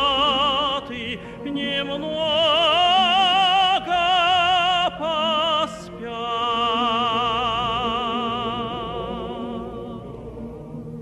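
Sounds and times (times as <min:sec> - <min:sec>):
tenor singing operatically: 0:00.0 - 0:10.3
male choir singing: 0:00.0 - 0:11.0.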